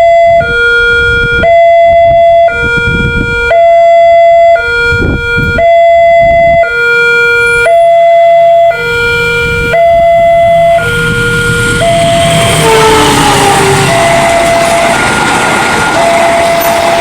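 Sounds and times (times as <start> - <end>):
two-tone crossing warning siren: 0.0 - 17.0
approaching train: 7.4 - 17.0.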